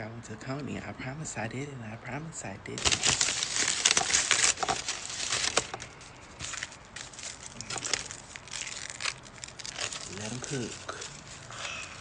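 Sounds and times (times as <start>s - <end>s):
food wrapping crinkling: 2.8s - 12.0s.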